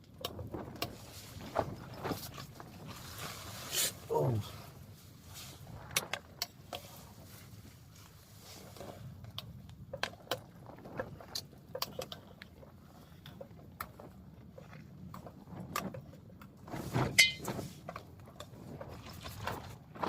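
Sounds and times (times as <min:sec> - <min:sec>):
metallic clank: 0:17.2 - 0:17.6.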